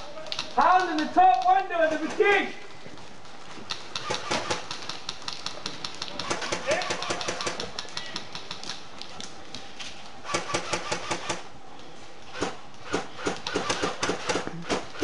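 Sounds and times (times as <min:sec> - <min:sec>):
airsoft guns firing: 0:03.8 - 0:08.7, 0:10.2 - 0:11.5, 0:12.3 - 0:15.0.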